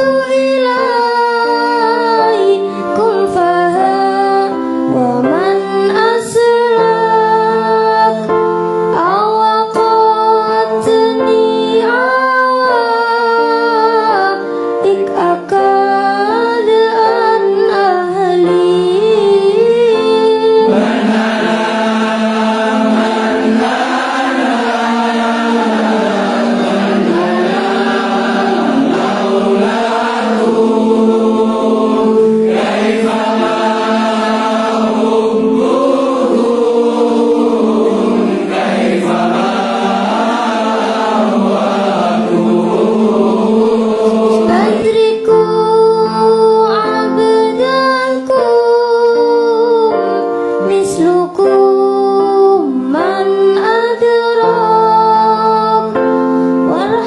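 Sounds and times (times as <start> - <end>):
group of voices singing: 18.4 - 49.2.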